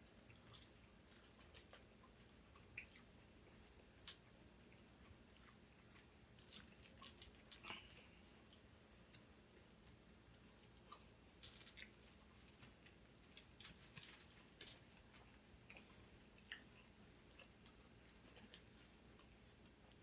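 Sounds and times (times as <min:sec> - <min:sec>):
faint chewing: 0:00.0 - 0:20.0.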